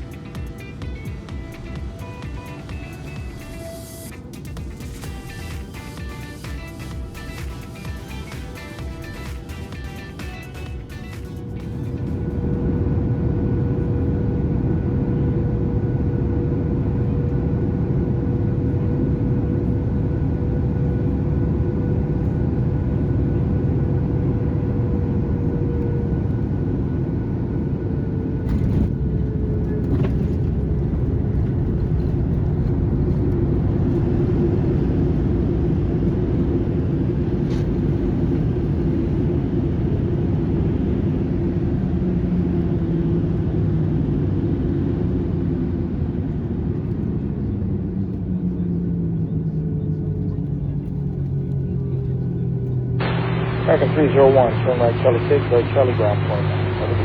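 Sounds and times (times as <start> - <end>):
jet engines roaring: 0.0 - 57.0
steady tone: 53.0 - 57.0.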